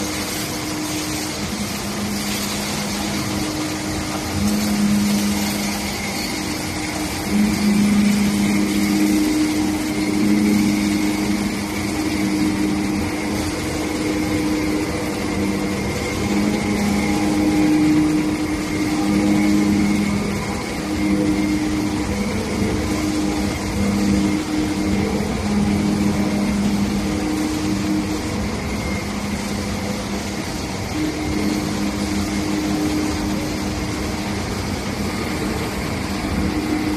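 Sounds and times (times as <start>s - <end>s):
machine motor hum: 0.0s - 36.9s.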